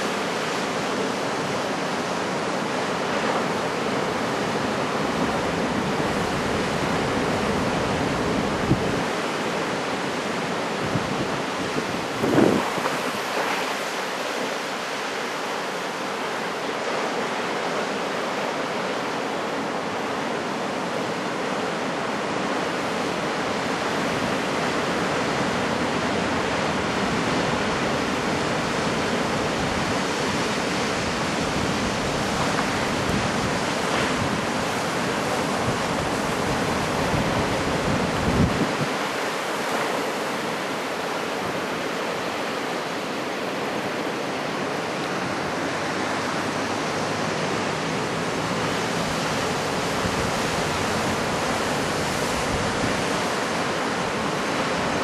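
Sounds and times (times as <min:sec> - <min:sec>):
heavy surf breaking: 0:00.0 - 0:55.0
wind blowing over microphone: 0:05.0 - 0:09.4, 0:10.0 - 0:14.2, 0:23.6 - 0:42.0, 0:43.6 - 0:55.0.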